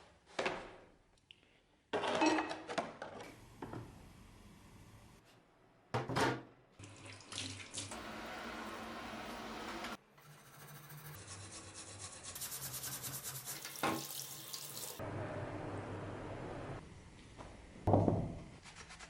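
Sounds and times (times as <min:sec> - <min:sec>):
tap water running and splashing: 0:06.8 - 0:08.9, 0:13.4 - 0:15.0.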